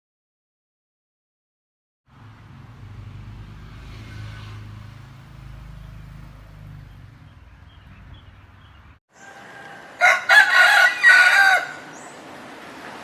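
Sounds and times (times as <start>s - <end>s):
vehicle engine rumbling: 2.1s - 9.0s.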